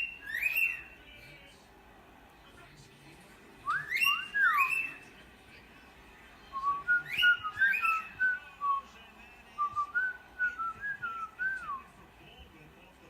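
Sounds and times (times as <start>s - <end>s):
cockatiel whistling: 0.0s - 1.0s, 3.7s - 5.0s, 6.6s - 8.4s.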